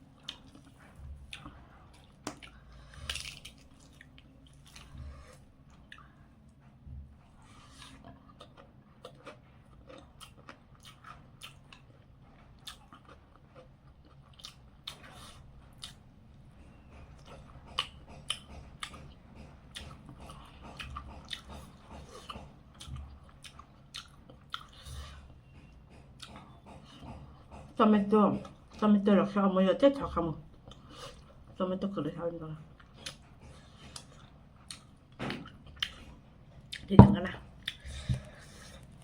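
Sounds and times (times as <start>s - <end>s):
person chewing food: 0.0s - 27.8s, 30.5s - 31.6s, 32.7s - 39.0s.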